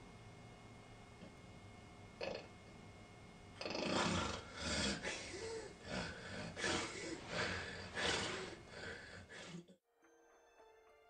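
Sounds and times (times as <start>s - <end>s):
person snorting: 3.6s - 9.8s.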